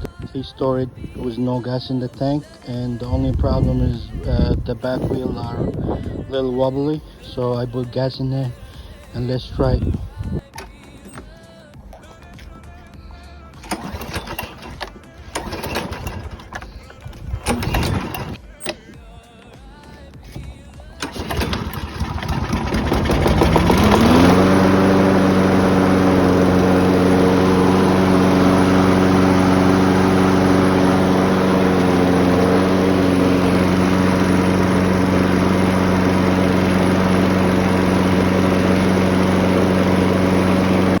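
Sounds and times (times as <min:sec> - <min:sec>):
lawnmower engine revving: 0:00.0 - 0:11.3, 0:11.9 - 0:19.0, 0:20.9 - 0:41.0.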